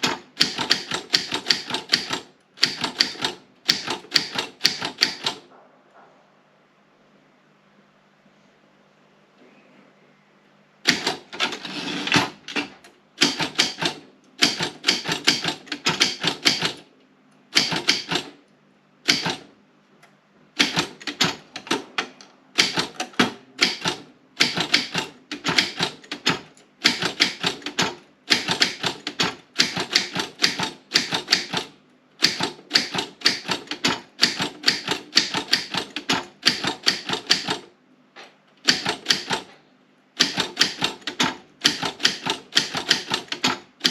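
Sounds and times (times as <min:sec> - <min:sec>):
typewriter keys striking: 0:00.0 - 0:05.4, 0:10.9 - 0:16.8, 0:17.5 - 0:18.3, 0:19.1 - 0:19.5, 0:20.6 - 0:37.6, 0:38.6 - 0:39.5, 0:40.2 - 0:43.9.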